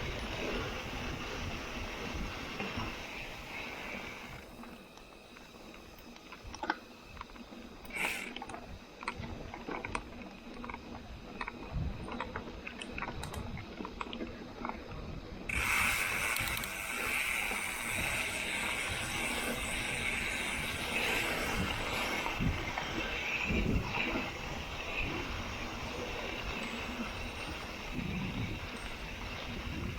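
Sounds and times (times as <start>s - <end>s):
bike hub freewheel buzzing: 0.0s - 29.9s
bike clicks and knocks: 4.4s - 24.2s.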